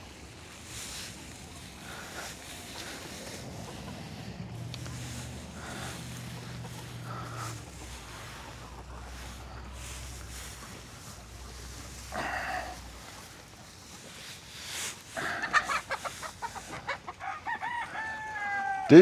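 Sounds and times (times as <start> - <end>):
chickens clucking: 0.0 - 19.0
rooster crowing: 1.8 - 12.9, 15.2 - 19.0
chicken squawk: 1.8 - 13.4, 14.6 - 19.0.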